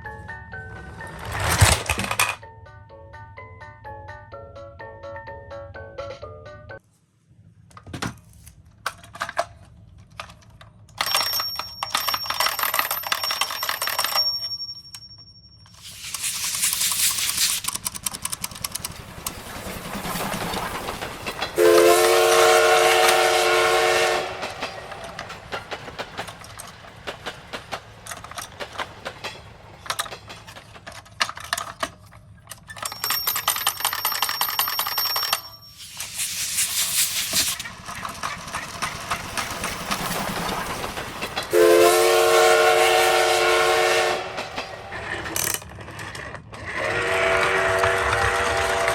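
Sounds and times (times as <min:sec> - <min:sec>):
plastic toys clicking and rattling: 0:01.1 - 0:02.4, 0:07.7 - 0:19.4, 0:24.7 - 0:40.6, 0:45.2 - 0:46.6
electronic hissing bursts: 0:15.8 - 0:17.7, 0:35.8 - 0:37.7.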